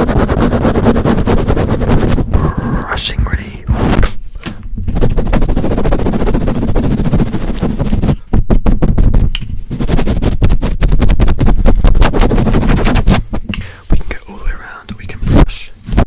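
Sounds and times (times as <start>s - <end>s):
brush scratching on microphone: 0.0s - 4.2s, 4.8s - 13.2s.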